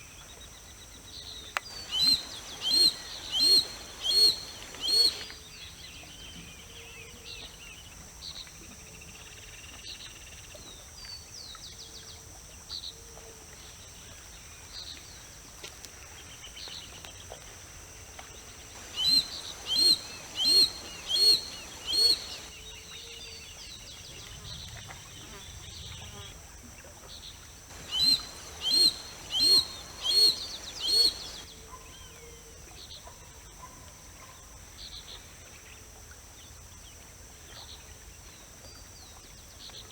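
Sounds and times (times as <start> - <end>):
steady high buzz: 1.7 - 5.2, 18.6 - 22.5, 27.7 - 31.4
small bird chirps: 1.7 - 5.3, 18.7 - 22.5, 27.7 - 31.4
hawk harsh calls: 1.8 - 5.2, 18.8 - 22.5, 27.7 - 31.4.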